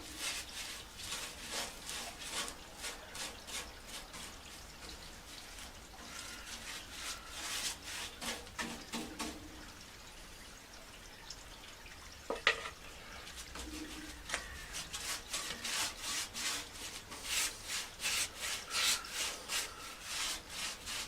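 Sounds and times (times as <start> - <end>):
hand rubbing strokes: 13.4 - 21.0.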